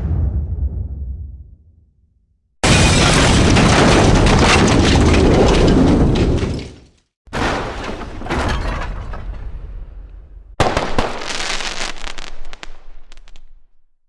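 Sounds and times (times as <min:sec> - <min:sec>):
explosions: 0:00.0 - 0:02.0.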